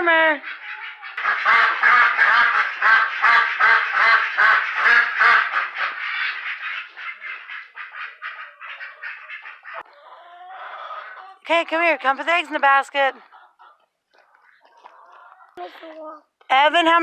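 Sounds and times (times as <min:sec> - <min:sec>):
ducks quacking: 0:00.0 - 0:15.6.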